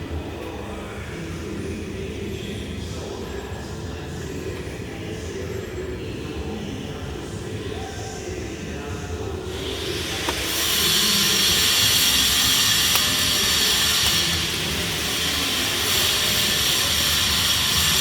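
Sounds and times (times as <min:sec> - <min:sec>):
welding arc hissing: 0:09.5 - 0:18.0.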